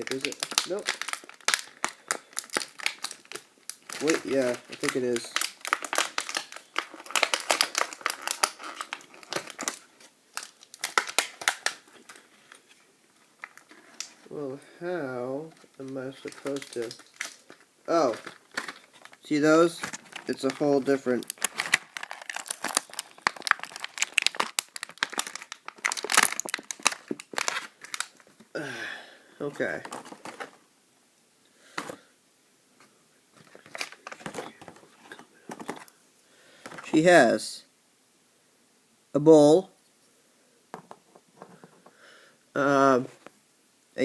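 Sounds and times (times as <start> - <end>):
plastic packaging tape crinkling: 0.0 - 12.8, 13.4 - 14.3, 15.5 - 28.5, 33.4 - 35.9.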